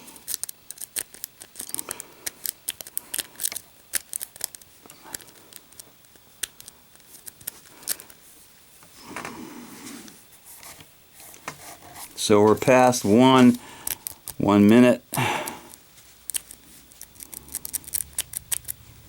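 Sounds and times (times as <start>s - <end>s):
metal clicks of lock picking: 16.3s - 18.8s.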